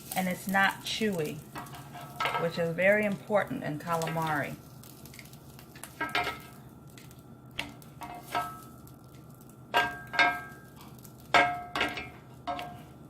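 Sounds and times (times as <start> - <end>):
utensils clinking on plate and grill: 0.1 - 3.2, 8.0 - 8.8, 9.8 - 12.9.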